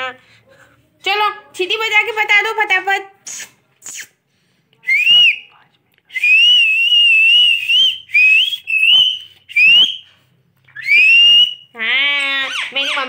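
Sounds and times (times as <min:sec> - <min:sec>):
parrot whistling: 0:10.7 - 0:11.7.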